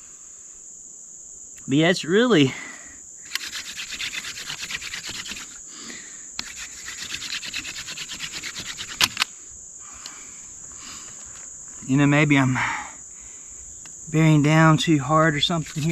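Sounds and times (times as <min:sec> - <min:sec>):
insect trill: 0:00.0 - 0:15.9
fire drill spindle rasping: 0:03.2 - 0:05.6, 0:06.4 - 0:09.3, 0:15.4 - 0:15.9.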